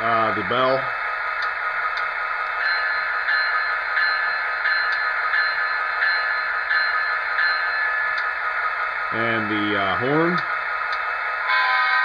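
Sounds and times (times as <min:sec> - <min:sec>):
locomotive bell through small speaker: 0:02.6 - 0:08.1.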